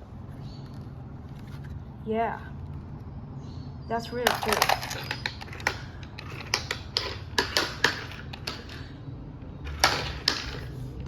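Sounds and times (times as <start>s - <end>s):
plastic toy clicking and knocking: 4.2s - 8.9s, 9.7s - 10.7s.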